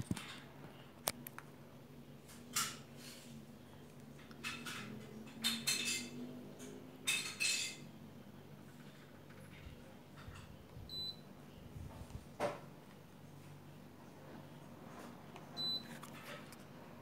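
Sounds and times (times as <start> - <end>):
low steady hum: 7.7 - 17.0
short faint high beep: 10.9 - 11.2.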